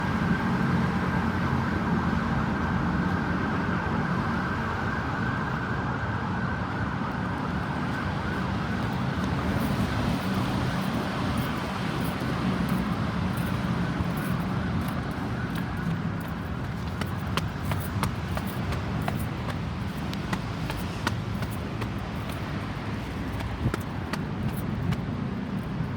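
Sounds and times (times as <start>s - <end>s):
ambulance siren: 0.0s - 16.6s
road traffic noise: 0.0s - 25.9s.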